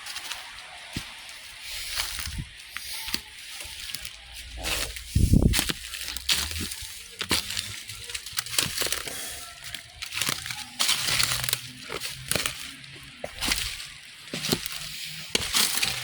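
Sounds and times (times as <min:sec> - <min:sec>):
footsteps crunching on rough ground: 0:00.0 - 0:16.0
snaps and crackles: 0:02.2 - 0:16.0.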